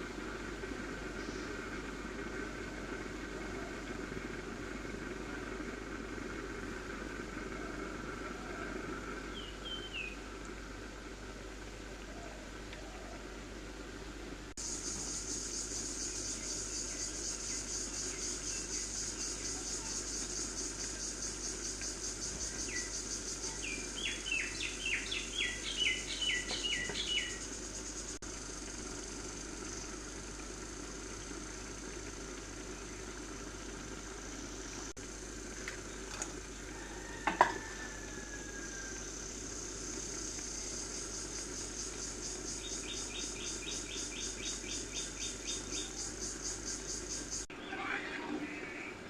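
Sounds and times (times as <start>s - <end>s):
insect pulsing trill: 0.0s - 13.4s, 14.6s - 47.5s
bird singing descending chirps: 22.4s - 27.5s.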